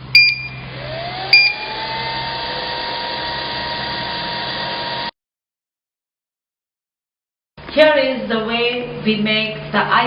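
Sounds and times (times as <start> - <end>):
vacuum pump whine: 0.0 - 5.2
short electronic beep: 0.1 - 0.6, 1.4 - 1.6.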